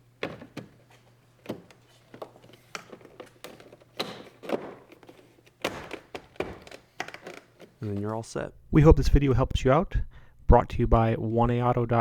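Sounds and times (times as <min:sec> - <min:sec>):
plastic clicks and knocks: 0:01.4 - 0:08.1
plastic panel thunks: 0:01.5 - 0:07.2.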